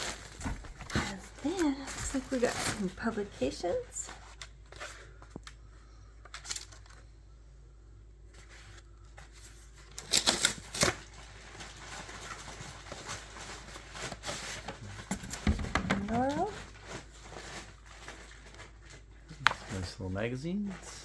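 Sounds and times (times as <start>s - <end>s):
paper rustling: 0.0s - 5.6s, 8.3s - 21.0s.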